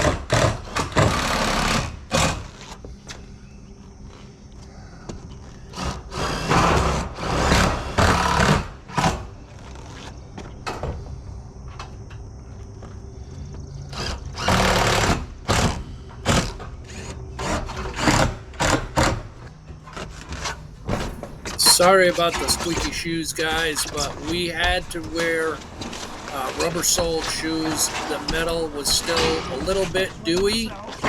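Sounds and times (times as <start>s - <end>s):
shoes squeaking on metal: 20.9s - 31.0s.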